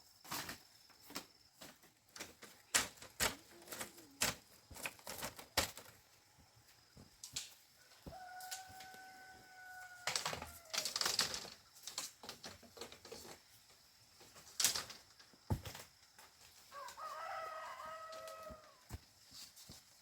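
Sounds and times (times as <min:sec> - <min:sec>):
clicks and rustling: 0:00.2 - 0:06.1, 0:10.0 - 0:13.5, 0:14.3 - 0:15.9
rooster crowing: 0:08.0 - 0:11.0, 0:16.7 - 0:18.8.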